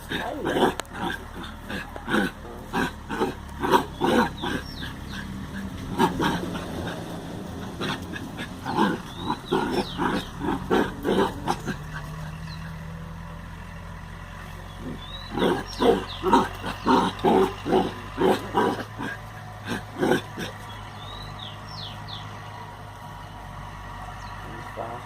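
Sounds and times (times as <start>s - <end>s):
dogs making rapid vocal sounds: 0.0s - 12.8s, 14.8s - 20.8s
dogs squeaking: 0.0s - 12.8s.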